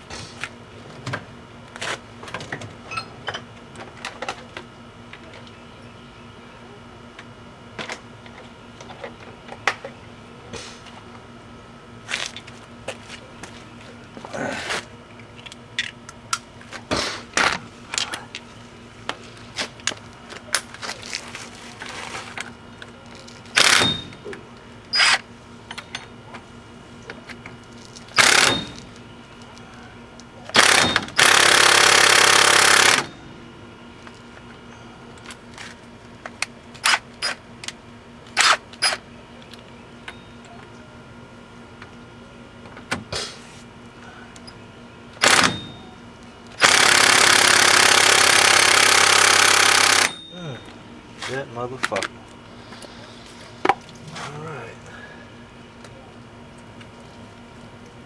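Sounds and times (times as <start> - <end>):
impact wrench hammering: 23.6 - 24.3, 28.2 - 28.9, 30.5 - 33.2, 45.2 - 45.8, 46.6 - 50.3.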